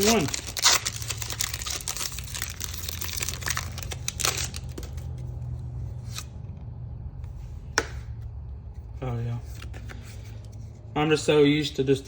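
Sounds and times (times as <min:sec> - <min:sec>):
foil wrapper crinkling: 0:00.0 - 0:05.2.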